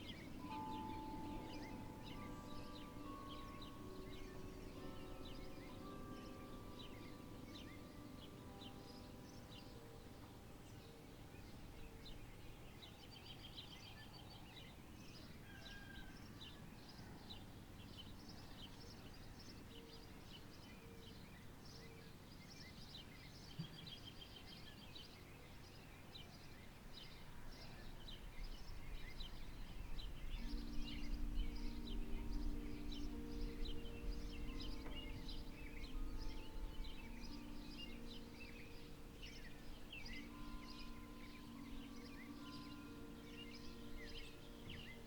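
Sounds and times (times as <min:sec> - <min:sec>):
small birds chirping: 0:00.0 - 0:45.0.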